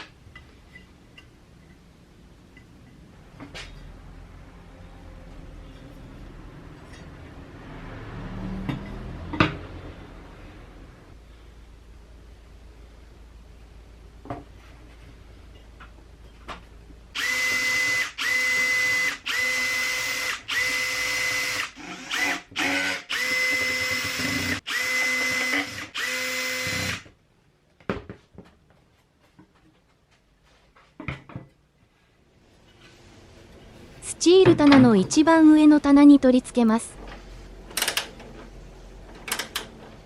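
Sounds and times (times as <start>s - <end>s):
power drill whining in bursts: 17.2s - 27.1s.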